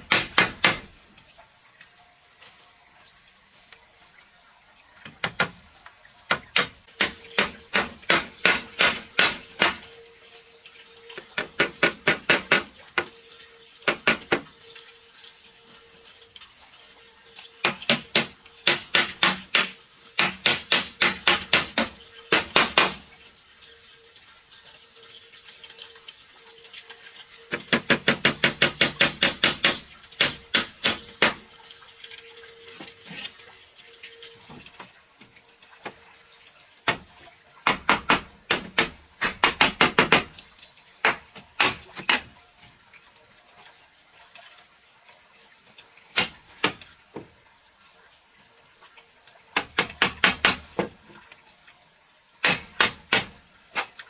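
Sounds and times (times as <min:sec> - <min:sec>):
hammer striking nails into wood: 0:00.0 - 0:00.9, 0:06.3 - 0:09.8, 0:17.6 - 0:23.0, 0:27.7 - 0:31.4, 0:37.6 - 0:40.3, 0:52.4 - 0:53.4.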